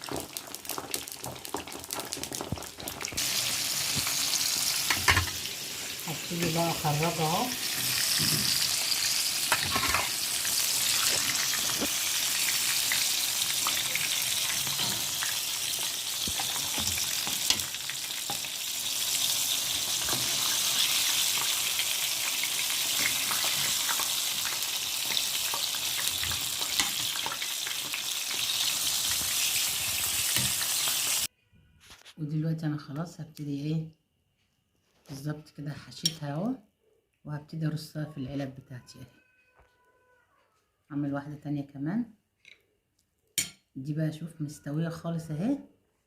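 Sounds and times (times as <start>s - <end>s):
clicks and knocks of turning food: 0.0s - 3.2s
eggplants sizzling in hot oil: 0.0s - 31.3s.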